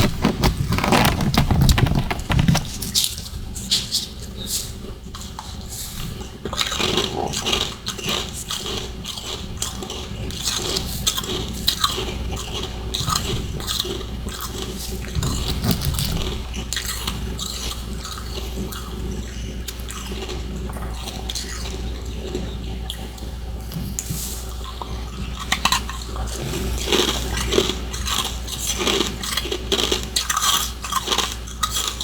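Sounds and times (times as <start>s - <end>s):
chewing ice crunches: 6.5s - 22.8s, 25.2s - 32.0s.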